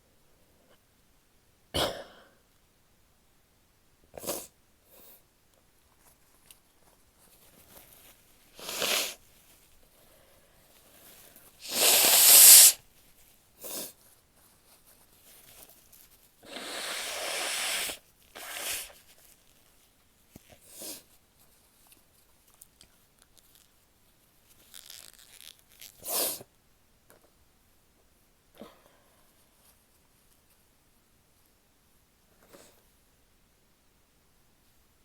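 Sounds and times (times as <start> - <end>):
short breaths: 11.6 - 12.8, 16.4 - 18.9
woman sneezing: 11.6 - 12.8.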